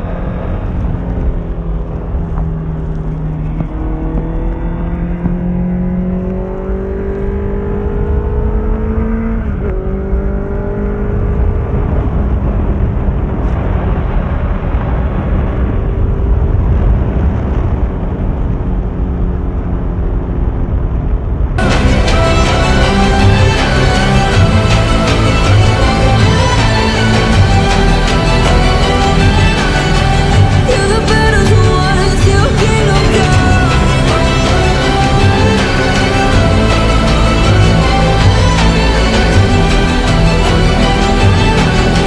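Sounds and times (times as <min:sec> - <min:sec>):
motorcycle engine accelerating: 0:00.0 - 0:42.0
broad rushing noise: 0:21.3 - 0:42.0.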